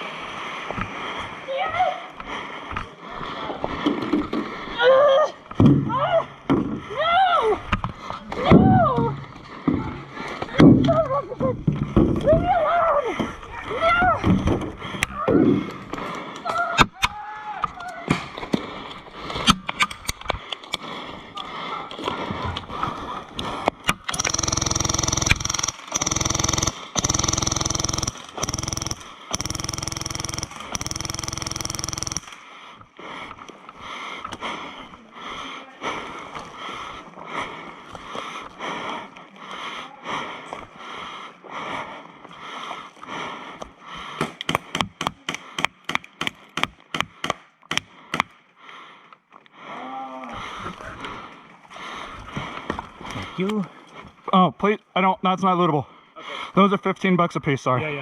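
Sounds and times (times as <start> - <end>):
airsoft gun full-auto bursts: 24.0 - 32.5.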